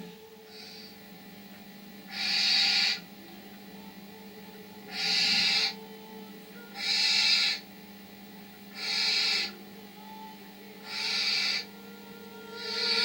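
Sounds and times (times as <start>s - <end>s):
owlets hissing snores: 2.1s - 3.0s, 4.9s - 5.8s, 6.8s - 7.6s, 8.8s - 9.6s, 10.8s - 11.7s, 12.6s - 13.0s.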